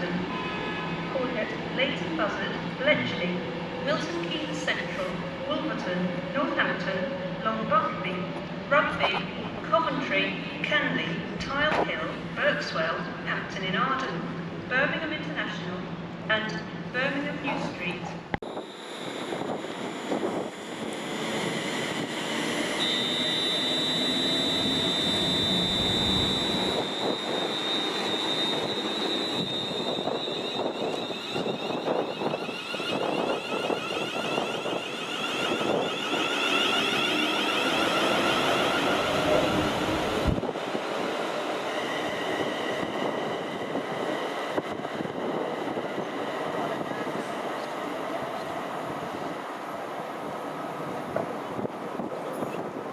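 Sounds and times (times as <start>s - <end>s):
train passing at speed: 18.2s - 52.9s
high steady whine: 18.4s - 40.5s.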